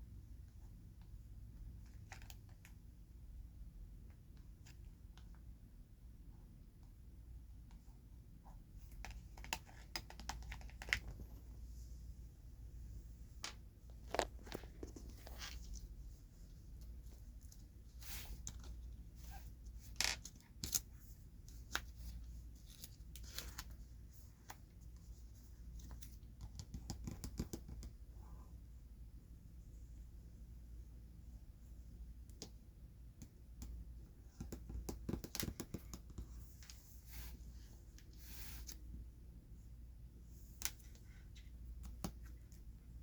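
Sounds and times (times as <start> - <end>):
cards tapping and clicking: 8.9 - 11.2, 25.8 - 28.0, 33.2 - 36.8, 41.7 - 42.4.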